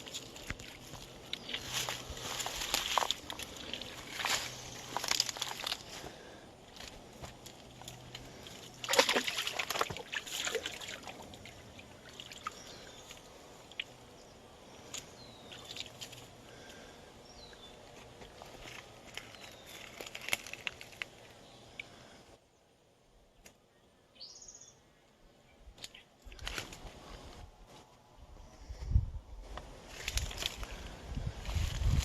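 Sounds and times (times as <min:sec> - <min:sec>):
crackles: 0:00.0 - 0:08.8, 0:18.0 - 0:22.0
water sloshing and splashing: 0:01.5 - 0:05.9, 0:07.4 - 0:14.0
faint bird chirps: 0:23.4 - 0:26.2.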